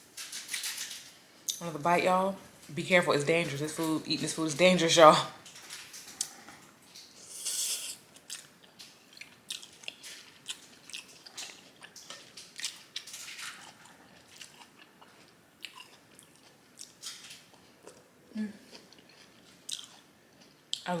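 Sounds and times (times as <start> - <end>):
wet chewing and smacking: 5.5 - 20.9.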